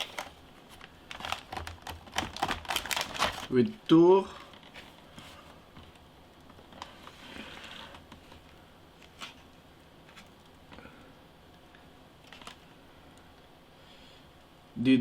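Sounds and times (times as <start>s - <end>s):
packaging rustle: 0.0s - 3.6s, 12.2s - 12.7s.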